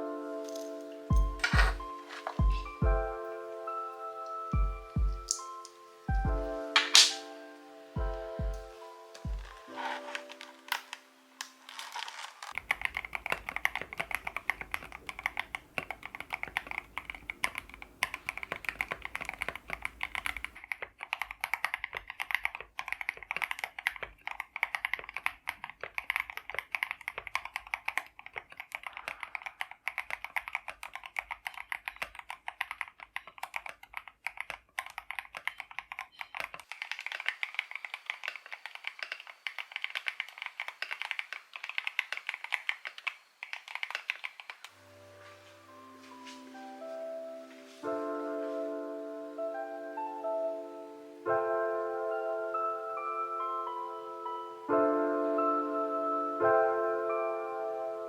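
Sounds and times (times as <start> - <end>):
mechanical keyboard typing: 0.5 - 3.0, 4.6 - 5.5, 8.0 - 44.8.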